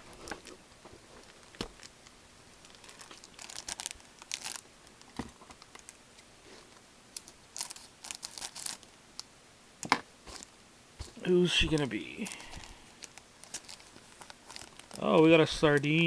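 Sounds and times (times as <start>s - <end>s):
foil wrapper tearing and crinkling: 1.2s - 6.0s, 7.1s - 8.9s, 12.2s - 16.0s.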